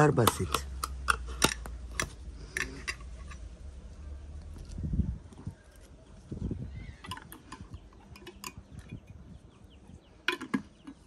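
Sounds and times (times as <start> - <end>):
wind buffeting microphone: 4.6 - 10.9.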